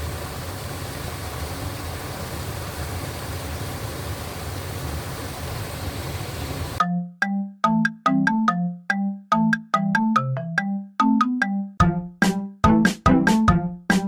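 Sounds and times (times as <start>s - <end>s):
road noise: 0.0s - 6.8s.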